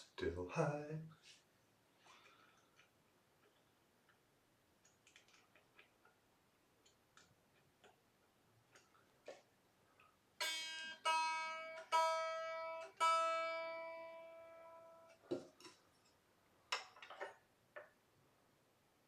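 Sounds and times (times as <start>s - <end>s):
small clicks and knocks: 4.8s - 6.2s, 15.1s - 18.0s
guitar string plucked: 10.4s - 15.8s.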